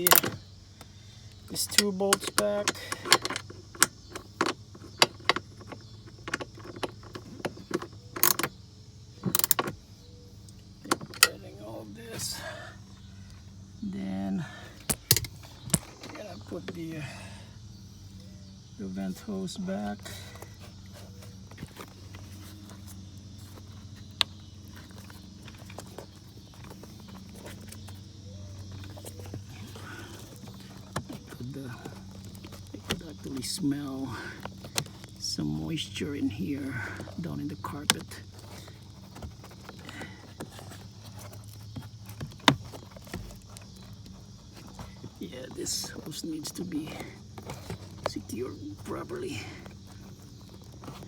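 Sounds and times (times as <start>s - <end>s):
plastic parts clicking and knocking: 0.0s - 8.6s, 9.2s - 9.8s, 10.8s - 11.4s, 14.8s - 16.8s, 34.3s - 35.4s, 36.8s - 45.2s
steady low hum: 0.0s - 51.0s.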